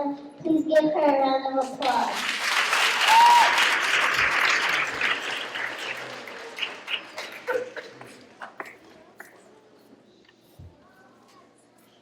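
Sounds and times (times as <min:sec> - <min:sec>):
audience of children applauding: 0:01.8 - 0:08.4.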